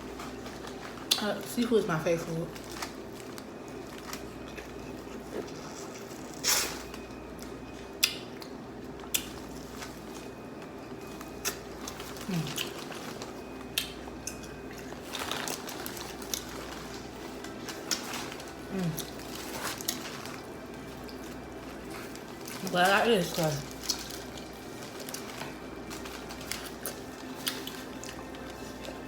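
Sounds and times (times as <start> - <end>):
wet squishing and smacking eating: 2.4 - 29.0.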